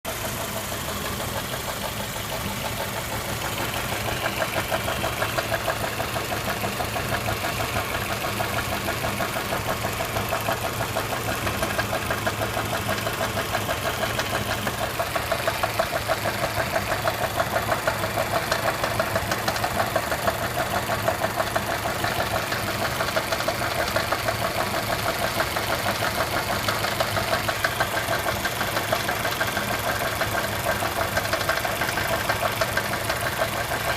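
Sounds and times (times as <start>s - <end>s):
car engine running: 0.1s - 33.9s
rapid regular engine knock: 0.1s - 33.9s.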